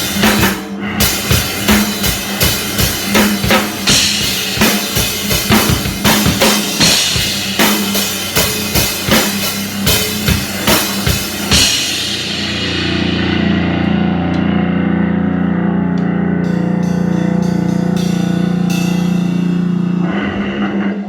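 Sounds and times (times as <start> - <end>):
heavy drum hits: 0.0 - 14.1, 16.4 - 21.0
distorted guitar drone: 0.0 - 21.0.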